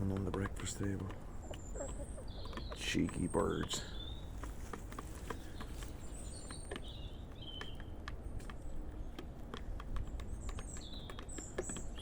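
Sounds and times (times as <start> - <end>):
chickens pecking taps: 0.0 - 12.0
high bird chirps: 1.4 - 4.4.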